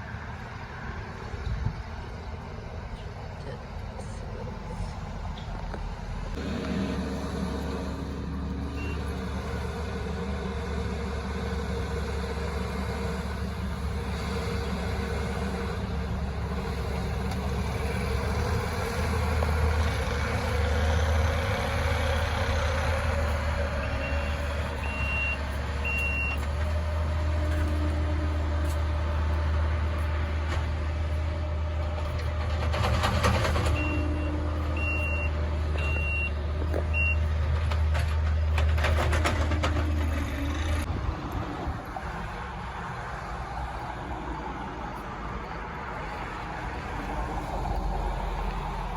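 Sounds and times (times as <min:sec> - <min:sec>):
heavy machinery engine running: 0:00.0 - 0:48.9
backup alarm beeping: 0:23.8 - 0:26.4, 0:33.8 - 0:37.3.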